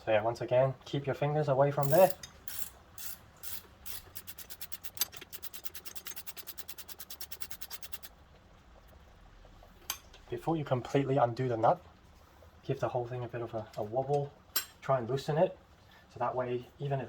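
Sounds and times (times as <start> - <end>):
ratchet wrench clicking: 1.8 - 8.1.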